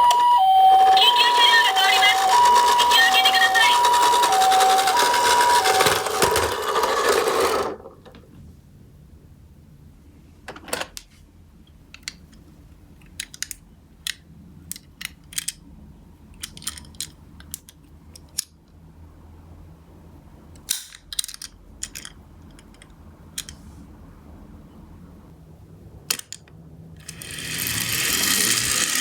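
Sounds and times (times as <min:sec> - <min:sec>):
toy cars clicking and clacking: 0:00.7 - 0:07.9, 0:13.1 - 0:15.6, 0:16.4 - 0:18.5, 0:20.6 - 0:23.6, 0:26.1 - 0:29.0.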